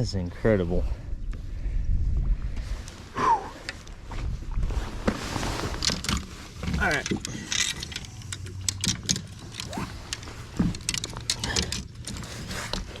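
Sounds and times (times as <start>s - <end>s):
light clicks and rattles: 5.7s - 13.0s.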